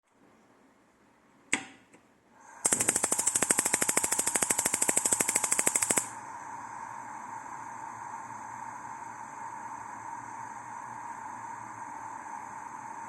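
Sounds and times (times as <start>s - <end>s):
electric igniter ticking: 2.6s - 6.2s.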